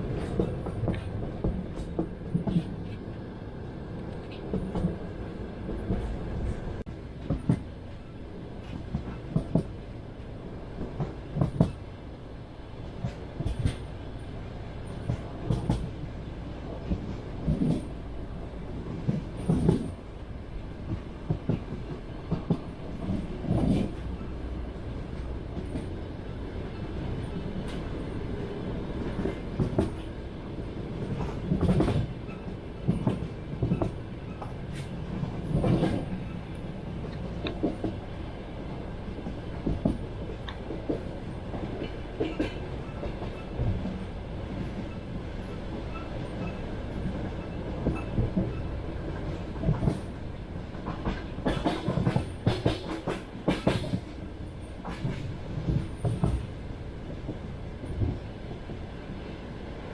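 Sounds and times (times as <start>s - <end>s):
train wheels clattering over rail joints: 8.6s - 9.8s, 10.8s - 11.9s, 14.9s - 16.0s, 16.7s - 18.0s, 18.8s - 20.1s, 20.8s - 24.3s, 29.1s - 30.1s, 31.0s - 36.5s, 39.2s - 58.3s.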